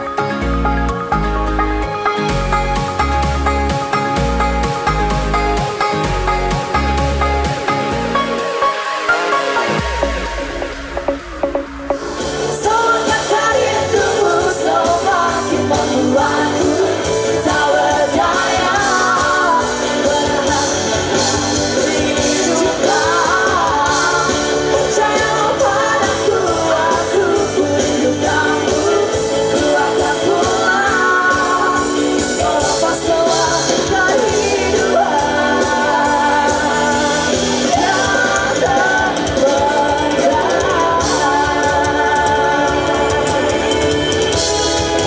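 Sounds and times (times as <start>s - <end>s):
pop-rock band with drums: 0.0s - 45.0s
lead singer singing: 11.9s - 45.0s.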